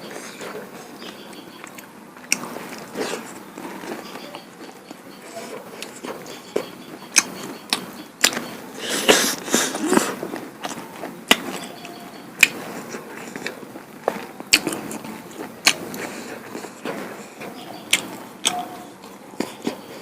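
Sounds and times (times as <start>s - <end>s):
wet chewing: 0.0s - 20.0s
mouth smacking clicks: 7.1s - 8.4s, 9.7s - 17.1s.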